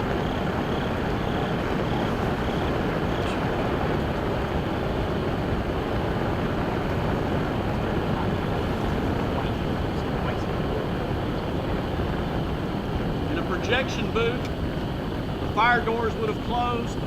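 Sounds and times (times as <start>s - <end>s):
film reel burning with rushing flame: 0.0s - 17.0s.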